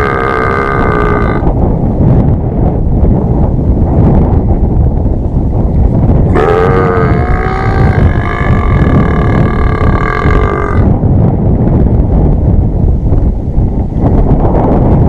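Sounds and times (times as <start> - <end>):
person burping long: 0.0 - 1.5, 6.3 - 11.0
wind rumble on microphone: 0.0 - 15.0.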